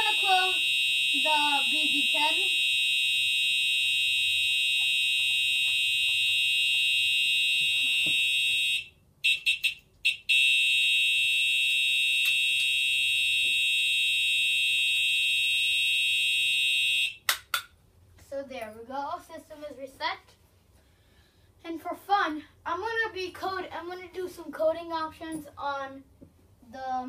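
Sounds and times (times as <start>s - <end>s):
loud electronic alarm horn tone: 0.0s - 17.2s
short alarm blips: 0.0s - 17.2s.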